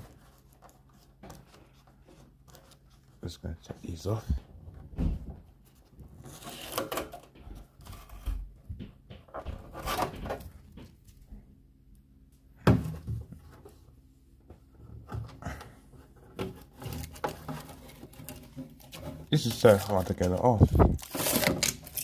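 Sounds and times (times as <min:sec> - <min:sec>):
packaging rustling and peeling: 0:16.8 - 0:22.0.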